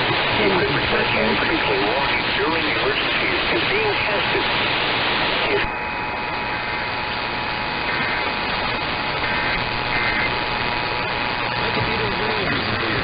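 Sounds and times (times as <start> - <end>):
faint voice on radio: 0.0 - 4.6, 5.4 - 5.8, 11.5 - 13.0
radio static hiss: 0.0 - 13.0
steady tone: 0.0 - 13.0.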